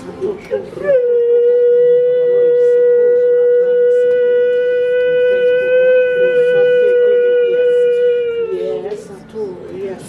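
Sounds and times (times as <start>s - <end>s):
shofar long held note: 0.9s - 8.6s.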